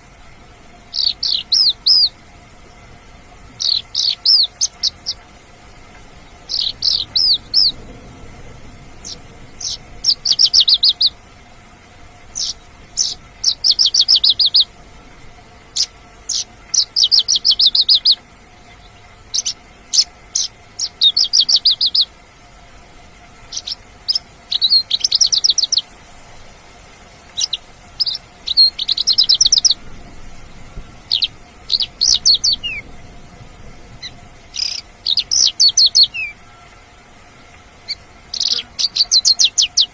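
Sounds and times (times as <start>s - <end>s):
lark singing high trills: 0.9s - 2.2s, 3.6s - 5.2s, 6.3s - 7.8s, 9.0s - 11.2s, 12.3s - 14.7s, 15.7s - 18.2s, 19.3s - 22.1s, 23.5s - 25.9s, 27.3s - 29.9s, 31.0s - 32.8s, 34.0s - 36.7s, 37.8s - 39.9s.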